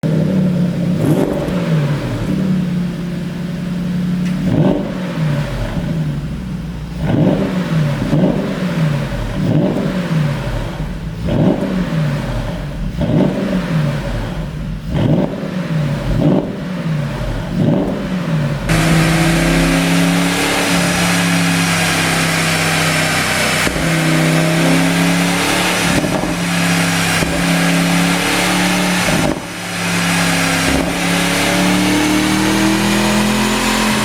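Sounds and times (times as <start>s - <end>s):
car engine revving: 0.0s - 34.0s
exhaust cracks: 6.9s - 32.6s.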